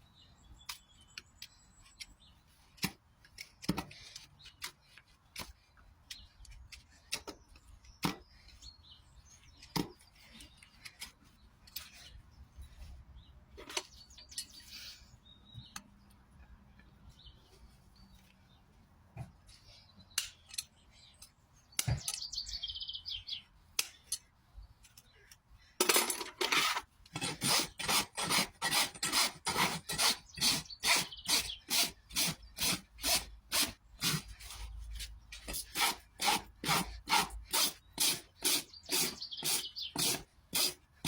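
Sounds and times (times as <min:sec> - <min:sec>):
hoof trimming snips and clicks: 0:00.6 - 0:08.3, 0:23.8 - 0:25.4.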